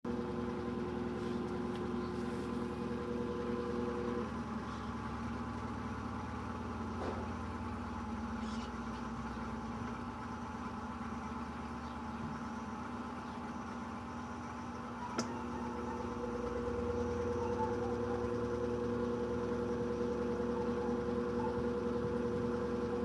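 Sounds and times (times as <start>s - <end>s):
washing machine spinning: 0.1s - 23.0s.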